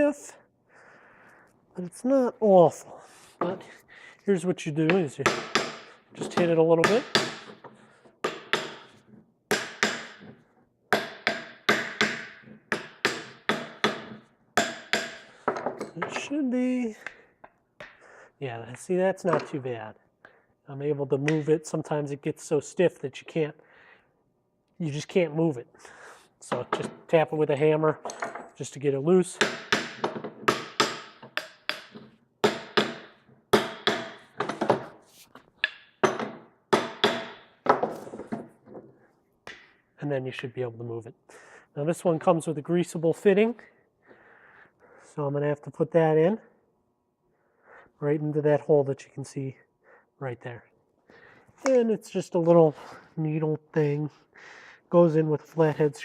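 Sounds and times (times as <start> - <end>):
hammer tapping metal joint: 4.9 - 16.3, 29.4 - 34.8.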